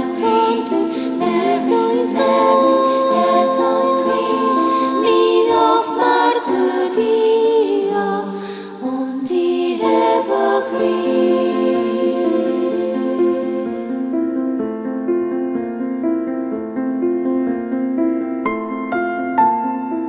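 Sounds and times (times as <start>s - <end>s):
slow choir-like singing: 0.0s - 14.2s.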